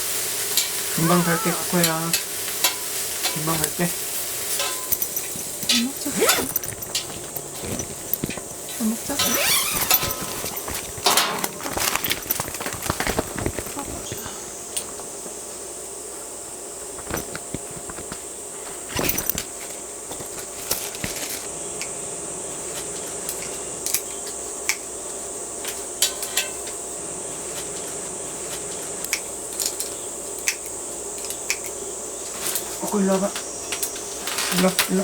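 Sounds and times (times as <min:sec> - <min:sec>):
background hiss: 0:00.0 - 0:35.0
dishes and utensils clinking: 0:04.5 - 0:14.4.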